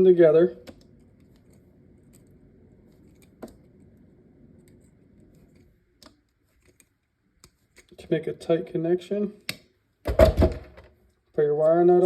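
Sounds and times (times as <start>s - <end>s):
wire scraping and rustling: 1.0s - 8.0s.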